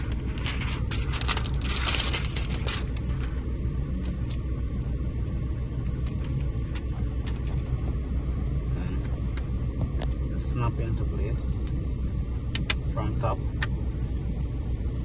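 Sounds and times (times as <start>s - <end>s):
low background rumble: 0.0s - 15.0s.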